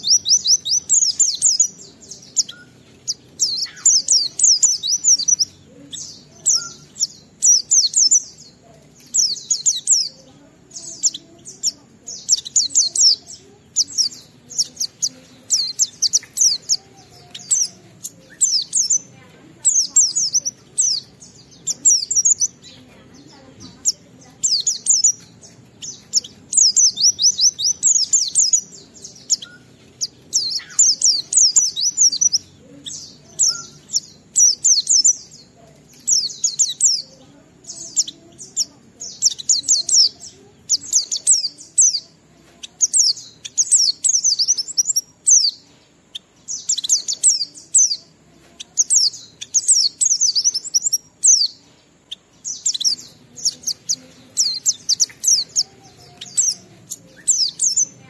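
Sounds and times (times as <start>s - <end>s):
bird warbling high-pitched: 0.0s - 8.4s.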